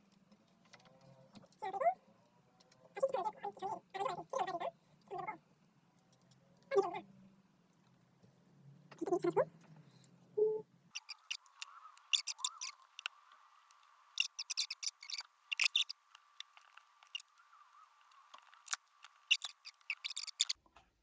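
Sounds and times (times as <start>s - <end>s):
small sharp clicks and taps: 11.0s - 20.6s.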